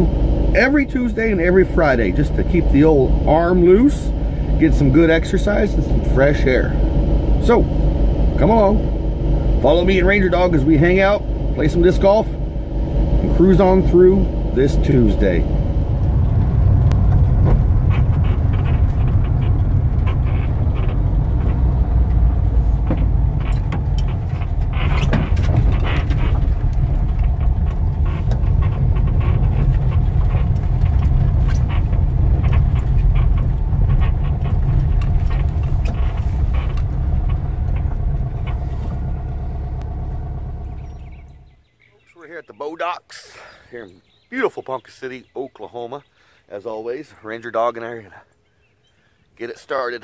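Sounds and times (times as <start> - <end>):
vehicle engine and road rumble: 0.0 - 50.0
light clicks and rattles: 16.2 - 40.0.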